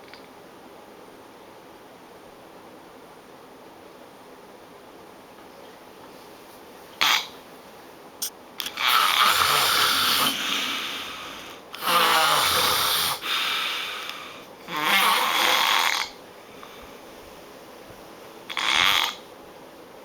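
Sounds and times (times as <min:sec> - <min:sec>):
person snoring loudly: 0:08.7 - 0:16.2.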